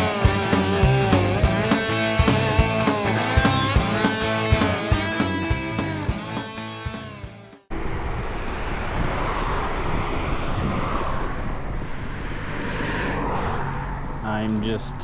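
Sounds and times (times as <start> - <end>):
rock music: 0.0 - 7.7
wind on microphone: 7.7 - 15.0.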